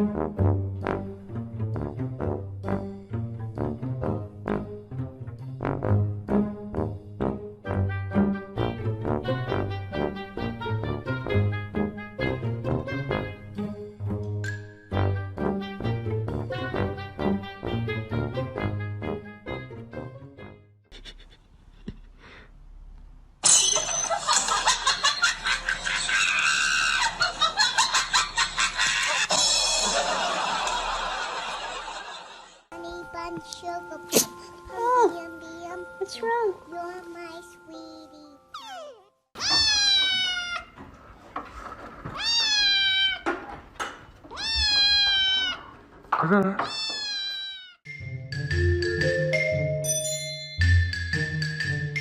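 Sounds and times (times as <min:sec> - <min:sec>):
people screaming and laughing: 0:24.1 - 0:32.6
cat meowing: 0:38.6 - 0:40.8, 0:42.2 - 0:43.3, 0:44.3 - 0:45.8, 0:46.6 - 0:47.8.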